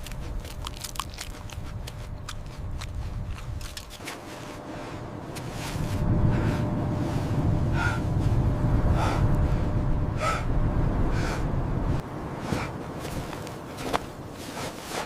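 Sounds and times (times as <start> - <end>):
blizzard wind rumbling: 0.0 - 15.0
heavy gasping breaths: 8.9 - 9.6.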